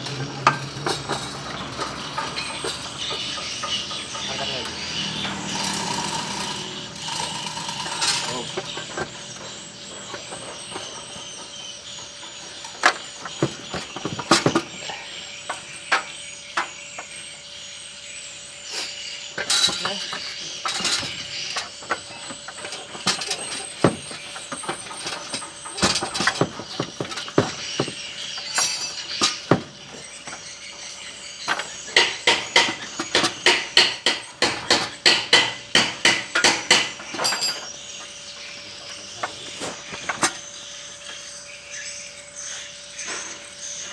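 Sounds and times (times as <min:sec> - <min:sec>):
metallic knocks and clanks of tools: 0:00.0 - 0:17.1, 0:19.4 - 0:40.4
rapid even hammering: 0:31.4 - 0:37.3.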